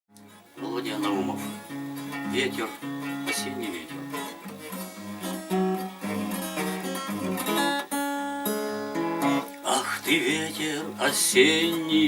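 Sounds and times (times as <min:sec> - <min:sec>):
acoustic guitar strumming chords: 0:00.1 - 0:12.0.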